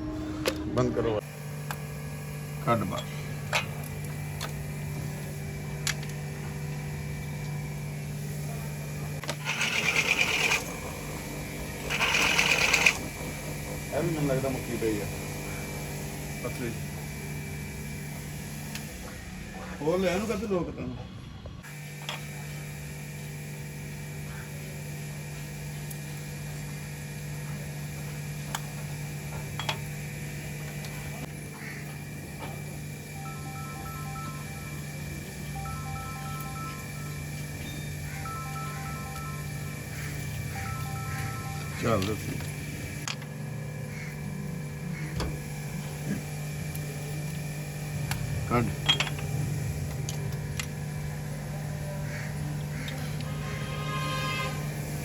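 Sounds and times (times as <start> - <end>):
low machine hum: 0.0 - 20.0, 22.3 - 55.0
power tool rattling: 9.2 - 14.1
low hum: 32.4 - 53.9.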